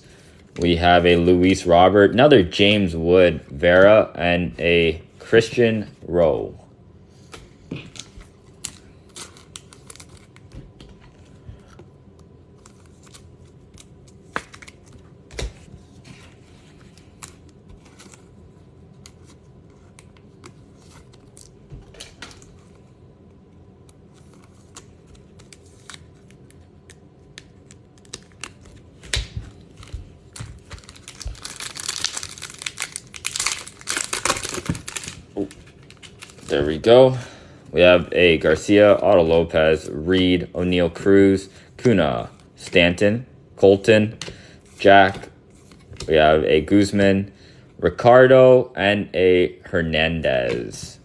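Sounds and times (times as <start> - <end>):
card pack wrapper crinkling and tearing: 7.9 - 10.5, 12.5 - 15.5, 23.9 - 36.9.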